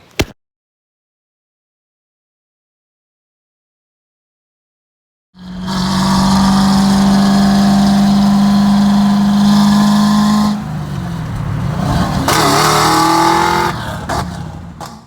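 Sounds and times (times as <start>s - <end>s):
car engine revving: 5.4s - 15.0s.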